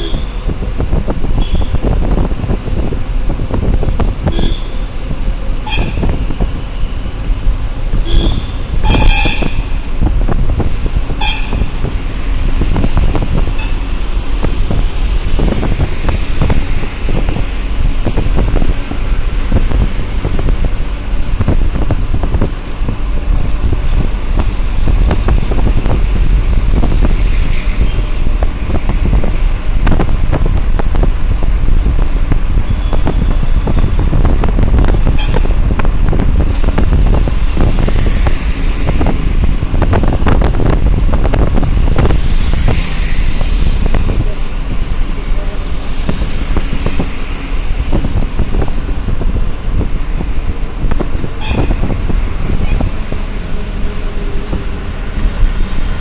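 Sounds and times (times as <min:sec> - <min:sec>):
vehicle horns honking: 0:00.0 - 0:00.4, 0:01.4 - 0:01.8, 0:04.2 - 0:05.0, 0:05.6 - 0:06.2, 0:07.9 - 0:09.8, 0:11.1 - 0:11.7, 0:35.0 - 0:35.6, 0:51.4 - 0:51.9
road traffic rumble: 0:00.0 - 0:56.0.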